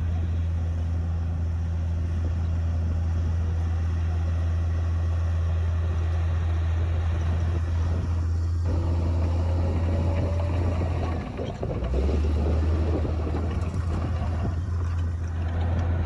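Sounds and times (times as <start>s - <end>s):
bulldozer diesel engine running: 0.0s - 16.0s
rough clatter: 8.7s - 16.0s.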